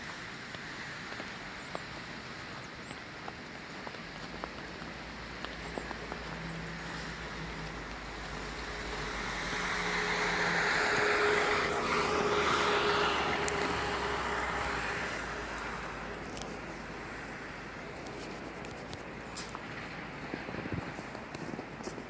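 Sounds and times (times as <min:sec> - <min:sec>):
street noise hiss: 0:00.0 - 0:22.0
car driving by on snow: 0:04.1 - 0:22.0.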